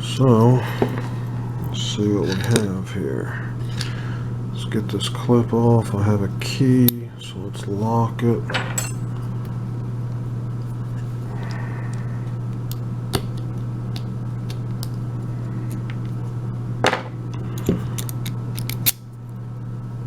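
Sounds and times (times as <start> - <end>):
steady low hum: 0.0 - 20.0
metallic clicks of padlock dismantling: 17.6 - 19.0.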